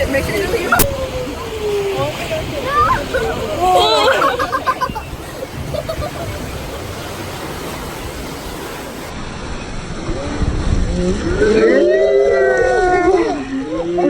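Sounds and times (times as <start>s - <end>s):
voices: 0.0s - 9.1s
rushing splashing water: 0.0s - 10.1s
wind buffeting microphone: 0.0s - 11.6s.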